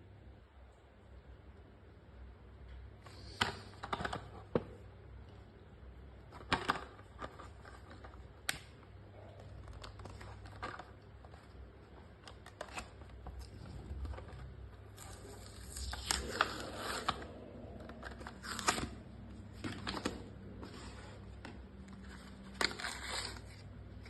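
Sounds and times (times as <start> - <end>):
plastic packaging crinkling and tearing: 6.3 - 24.0.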